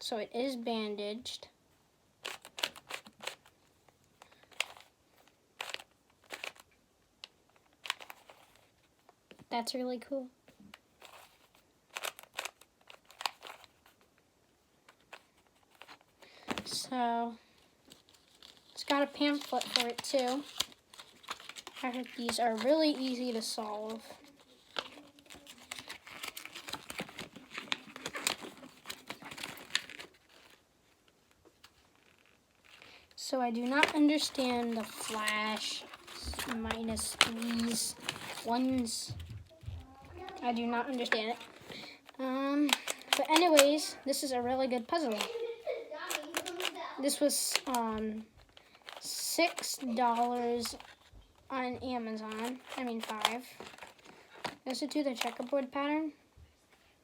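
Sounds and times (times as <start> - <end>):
paper rustling and crinkling: 2.2 - 9.5, 10.6 - 14.2, 14.8 - 55.8
plastic puzzle clicking: 42.7 - 43.8, 46.1 - 46.8.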